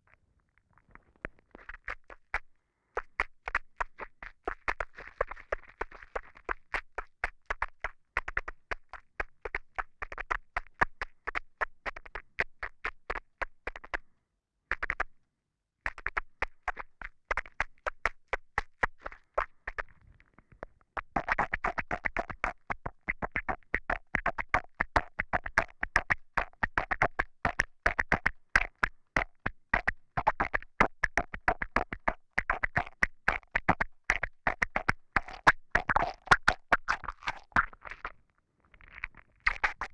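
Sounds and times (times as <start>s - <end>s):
wet mouth clicks: 31.6s - 38.2s, 38.8s - 39.9s.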